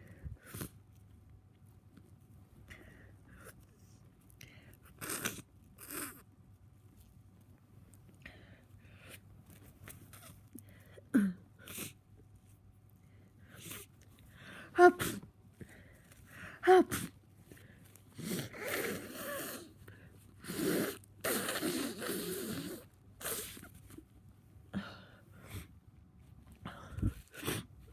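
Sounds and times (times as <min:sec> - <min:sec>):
person sneezing: 0:14.7 - 0:15.3, 0:16.6 - 0:17.2, 0:20.4 - 0:23.6.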